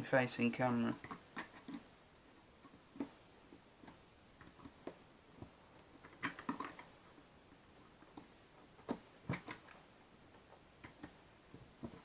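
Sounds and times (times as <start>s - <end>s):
small plastic clicks and knocks: 8.0s - 9.8s.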